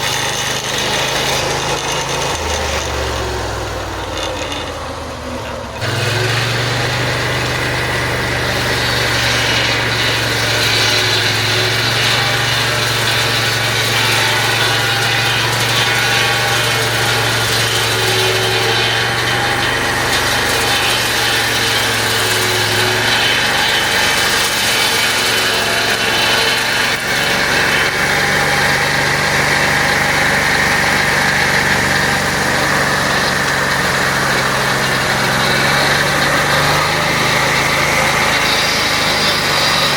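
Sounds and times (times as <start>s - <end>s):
sawmill engine humming: 0.0s - 39.9s.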